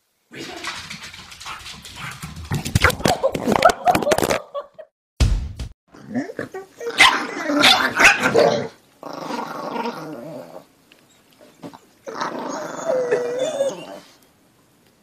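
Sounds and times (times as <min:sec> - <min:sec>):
dog growling: 0:00.3 - 0:03.4, 0:06.0 - 0:10.7, 0:12.1 - 0:14.0.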